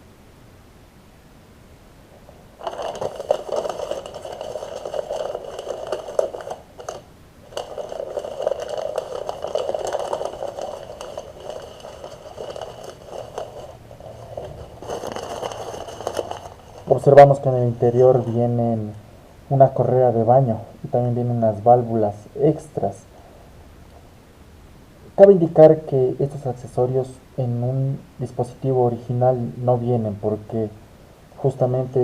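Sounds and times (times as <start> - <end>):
packaging rustling and scraping: 2.3 - 18.6.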